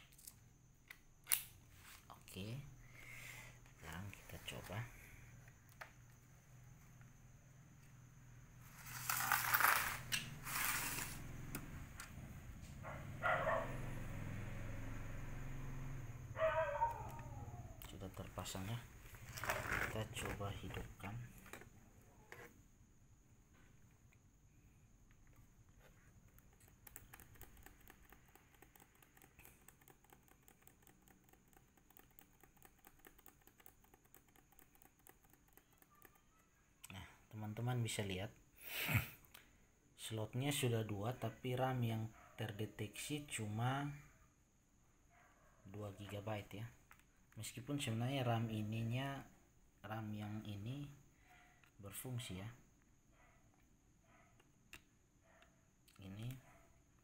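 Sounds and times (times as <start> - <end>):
faint low hum: 10.9 - 38.4
laptop keyboard keys clicking: 26.3 - 36.3.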